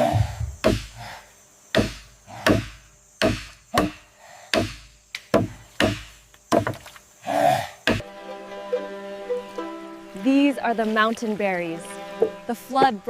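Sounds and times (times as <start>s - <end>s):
sharp blows on wood: 0.0s - 1.1s, 1.7s - 6.8s, 7.8s - 8.0s.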